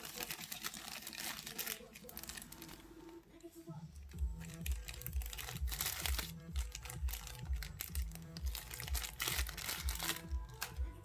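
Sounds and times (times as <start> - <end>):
plastic packaging crinkling: 0.0 - 3.3, 4.0 - 11.0
music with bass beat: 4.0 - 11.0.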